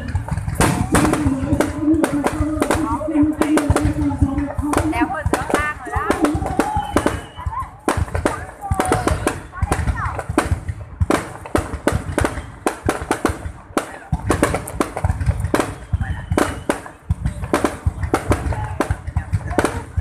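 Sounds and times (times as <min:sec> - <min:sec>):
fireworks bangs and crackles: 0:00.0 - 0:20.0
low rumbling boom: 0:00.0 - 0:20.0.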